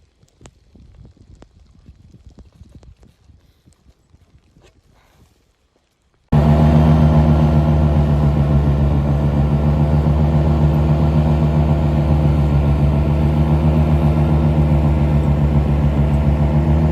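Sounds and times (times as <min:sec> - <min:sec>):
vehicle engine running steadily: 0:06.3 - 0:16.9.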